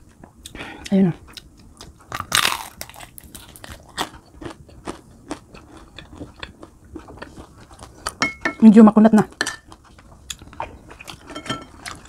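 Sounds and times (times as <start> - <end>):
crunchy chewing: 0.3 - 8.2
crunching bite into fried food: 2.1 - 5.4.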